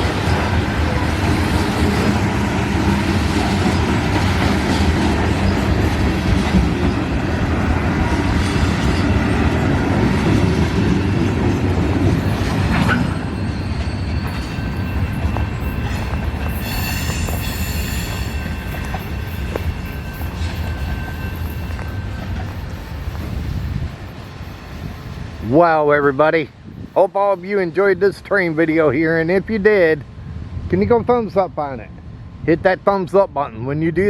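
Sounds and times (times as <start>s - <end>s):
train wheel squeal: 0.0s - 25.6s
freight train rumbling past: 0.0s - 34.0s.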